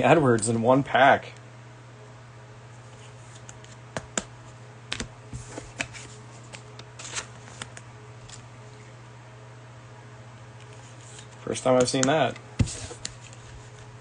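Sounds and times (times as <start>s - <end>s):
steady low hum: 0.0s - 14.0s
trading cards clicking and rustling: 10.7s - 13.9s.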